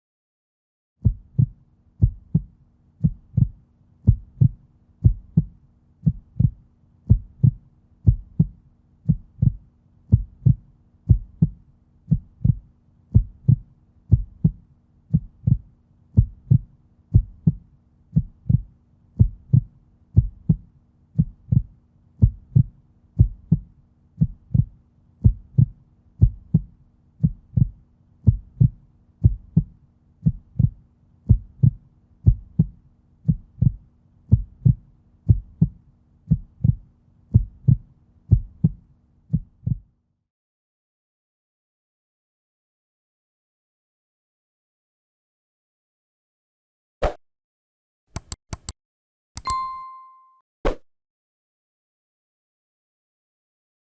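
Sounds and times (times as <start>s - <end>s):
heartbeat thumping: 1.0s - 39.8s.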